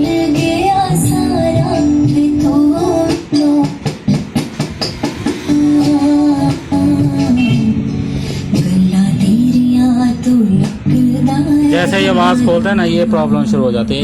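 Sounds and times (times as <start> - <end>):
person singing: 8.5 - 13.4.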